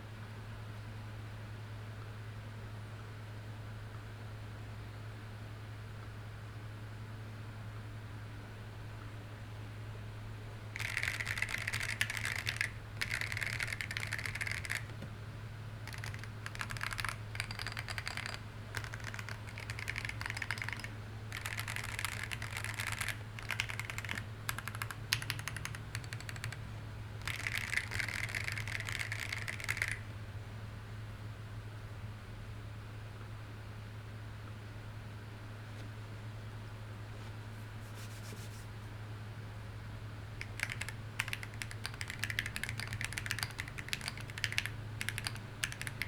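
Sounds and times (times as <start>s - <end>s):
mechanical keyboard typing: 10.8s - 15.1s, 15.8s - 30.1s, 40.4s - 46.0s.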